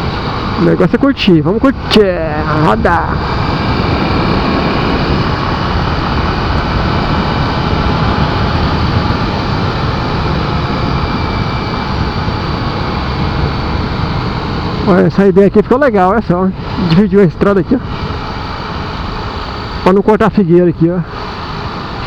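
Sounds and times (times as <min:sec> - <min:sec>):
wind rushing past: 0:00.0 - 0:15.4
motorcycle engine cruising: 0:00.0 - 0:22.0.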